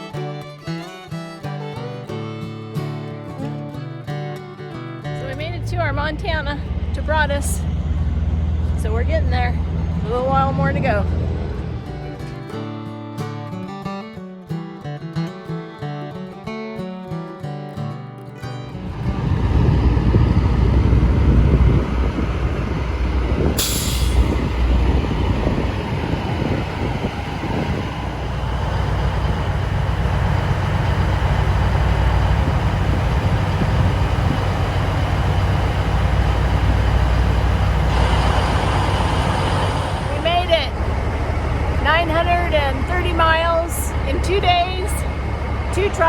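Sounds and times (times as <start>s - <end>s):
truck engine rumble: 0.0s - 2.6s, 5.1s - 12.7s, 18.6s - 46.0s
air hissing: 23.4s - 26.9s, 37.4s - 40.3s.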